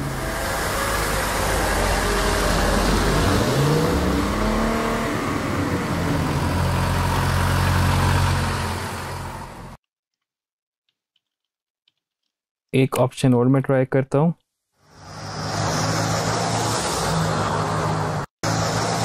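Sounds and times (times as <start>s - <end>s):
car engine revving: 0.0s - 9.8s.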